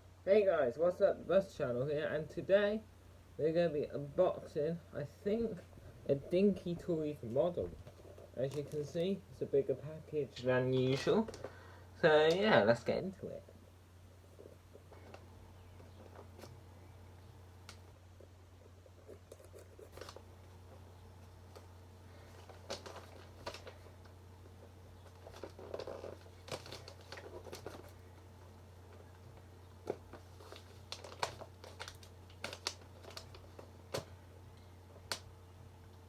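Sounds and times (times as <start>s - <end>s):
steady low hum: 0.0s - 36.0s
packaging crinkling and tearing: 7.8s - 9.2s, 19.5s - 20.3s, 21.3s - 34.2s.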